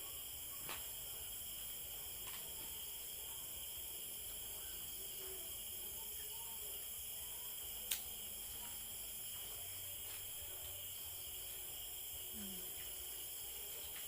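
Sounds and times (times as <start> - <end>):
insect chirring: 0.0 - 14.0
sharp click: 7.9 - 8.1.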